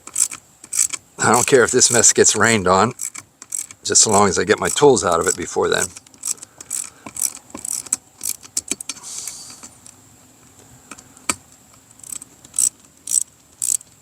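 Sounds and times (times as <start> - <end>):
short hiss: 8.9 - 9.8.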